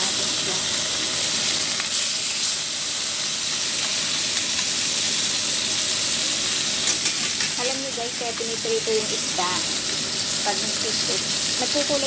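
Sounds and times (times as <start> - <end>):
tofu sizzling in oil: 0.0 - 12.0.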